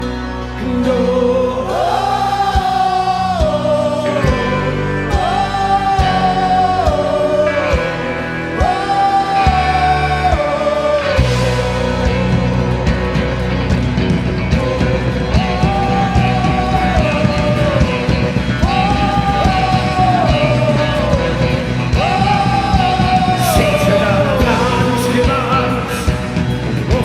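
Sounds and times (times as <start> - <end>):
worship band playing: 0.0 - 27.0
voices singing held notes: 0.6 - 27.0
drum kit steady beat: 11.2 - 27.0.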